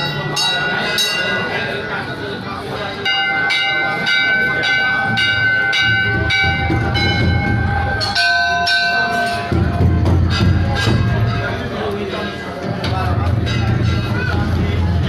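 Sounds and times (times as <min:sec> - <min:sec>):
temple bells ringing: 0:00.0 - 0:15.0.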